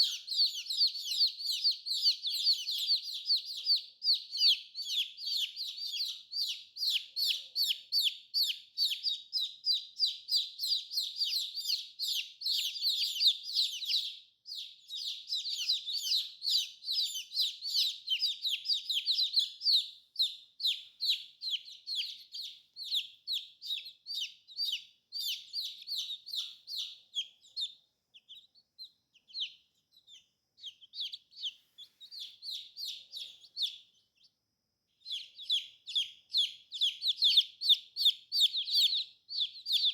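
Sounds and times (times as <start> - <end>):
baby chicks peeping: 0.0 - 39.9.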